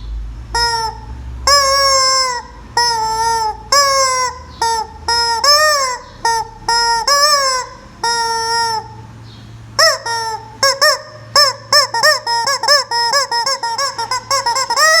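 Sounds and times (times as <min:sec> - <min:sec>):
toy chicken honking squawks: 0:00.6 - 0:09.0, 0:09.8 - 0:15.0.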